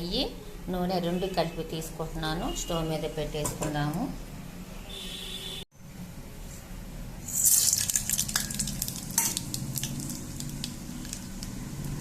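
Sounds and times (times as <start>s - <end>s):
oil sizzling and frying: 7.2s - 12.0s.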